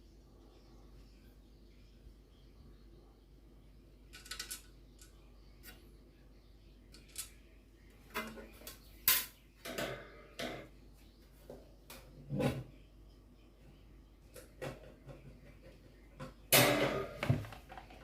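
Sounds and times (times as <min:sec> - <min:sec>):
fan parts clicking and clattering: 0:04.1 - 0:05.9, 0:06.9 - 0:10.8, 0:14.3 - 0:18.0.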